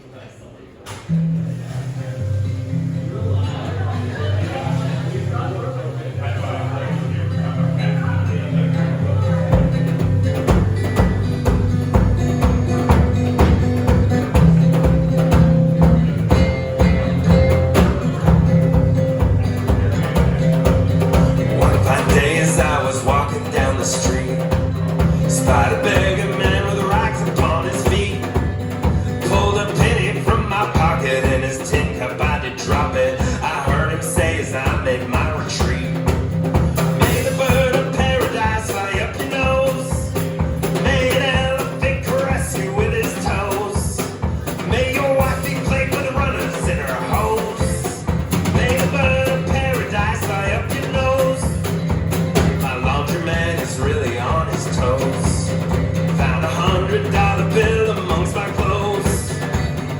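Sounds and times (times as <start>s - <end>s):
acoustic guitar strumming: 0.9s - 59.9s
drums keeping the beat: 7.8s - 59.9s
person singing: 14.3s - 51.8s, 52.4s - 59.9s.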